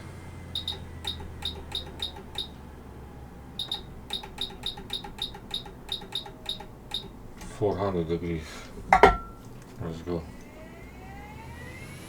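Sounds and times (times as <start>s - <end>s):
low steady hum: 0.0s - 11.4s
short high electronic beeps: 0.6s - 2.6s, 3.6s - 7.2s.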